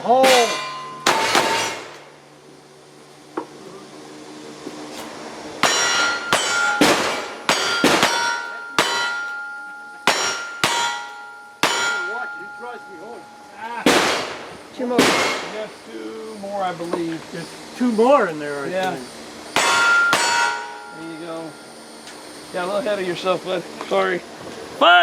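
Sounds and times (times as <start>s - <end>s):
steel target clanging and ringing: 0.0s - 2.2s, 5.6s - 15.7s, 19.6s - 21.7s
rapid gunshots: 13.9s - 15.5s.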